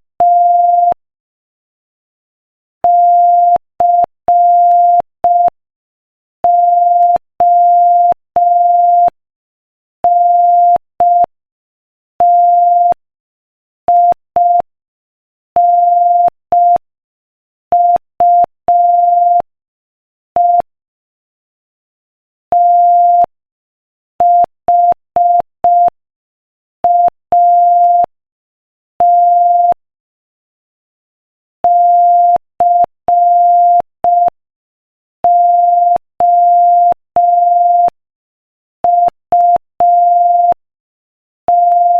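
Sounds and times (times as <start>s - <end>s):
morse code beep tone: 0.2s - 1.0s, 2.8s - 5.6s, 6.4s - 9.2s, 10.1s - 11.3s, 12.2s - 13.0s, 13.9s - 14.7s, 15.6s - 16.8s, 17.8s - 19.5s, 20.4s - 20.7s, 22.5s - 23.3s, 24.2s - 26.0s, 26.8s - 28.1s, 29.0s - 29.8s, 31.6s - 34.4s, 35.2s - 38.0s, 38.8s - 40.6s, 41.5s - 41.9s.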